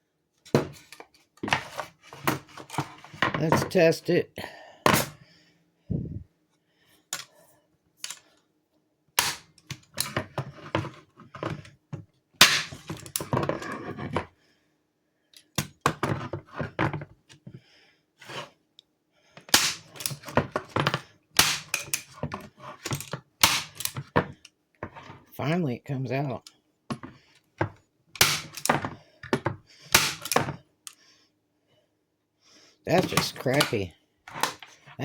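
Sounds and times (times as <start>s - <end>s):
staple gun snapping: 28.2s - 28.7s, 30.0s - 30.5s.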